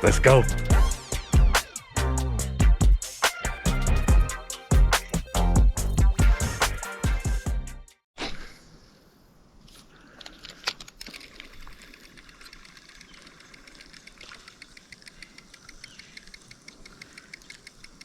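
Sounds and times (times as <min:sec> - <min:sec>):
fishing reel ticking: 0:10.8 - 0:18.0
fishing reel sharp click: 0:11.2 - 0:18.0.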